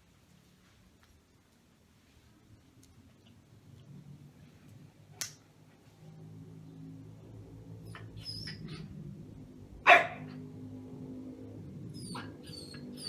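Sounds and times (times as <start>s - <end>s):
low steady hum: 0.0s - 13.0s
dog barking: 9.8s - 10.4s.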